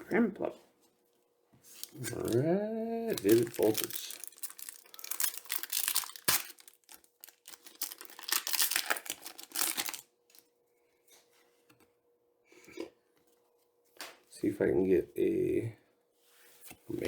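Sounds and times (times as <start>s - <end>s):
faint steady hum: 0.0s - 17.0s
foil wrapper tearing and crinkling: 1.7s - 10.4s.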